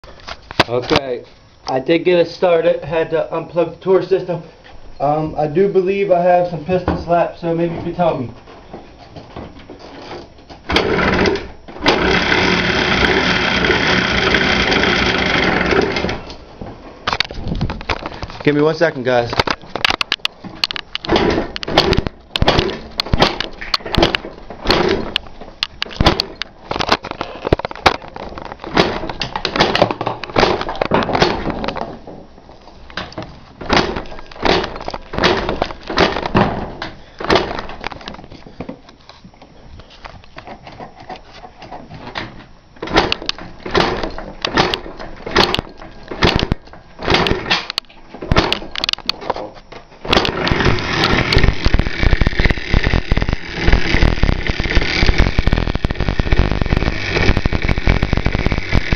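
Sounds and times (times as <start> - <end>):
engine knocks and pops: 7.9 - 38.9, 40.2 - 58.9
two-stroke engine revving: 10.7 - 16.2, 50.3 - 58.9.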